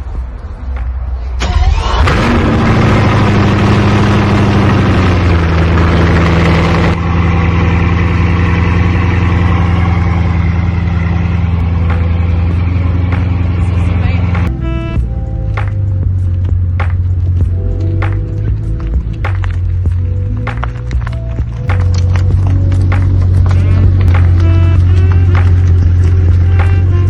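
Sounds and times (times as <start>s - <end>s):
car engine starting and idling: 0.9s - 27.0s.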